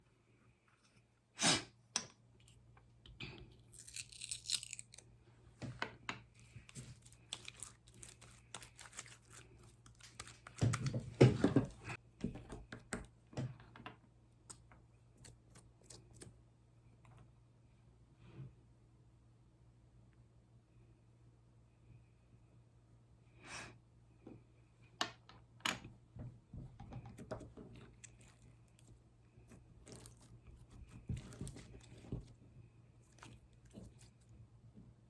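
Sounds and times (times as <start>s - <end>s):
crinkling rustle: 6.4s - 11.9s, 27.6s - 34.3s.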